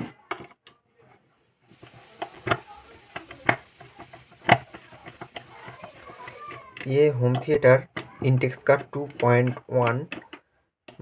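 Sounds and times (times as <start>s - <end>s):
steady hiss: 1.7s - 6.8s.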